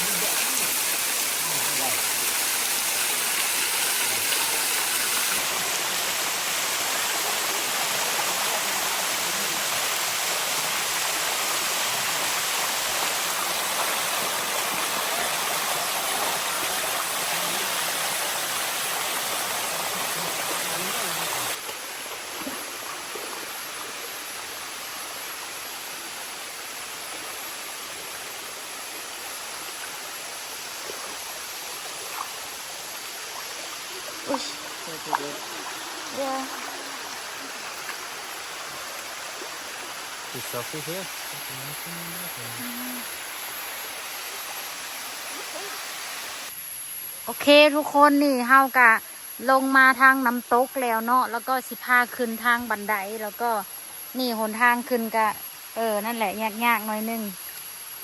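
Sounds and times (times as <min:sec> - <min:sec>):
waterfall rushing: 0:00.0 - 0:21.6.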